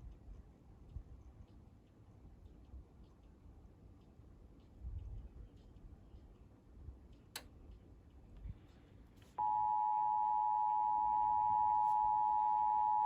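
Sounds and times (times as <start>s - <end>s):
two-tone alert alarm: 9.4s - 13.0s.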